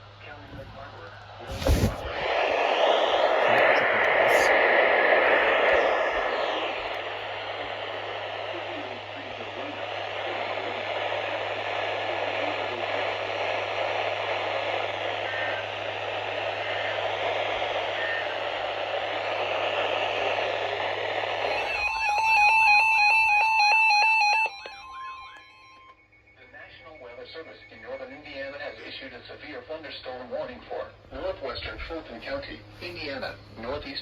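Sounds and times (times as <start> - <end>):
radio static hiss: 0.0 - 25.1
low hum: 0.0 - 29.4
faint steady tone: 21.4 - 30.0
warbling electronic alert tones: 21.8 - 26.1.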